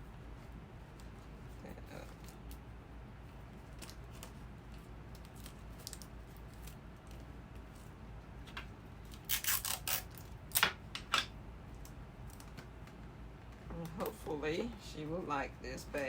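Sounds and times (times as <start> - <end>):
sharp crinkling rustles: 3.3 - 10.4.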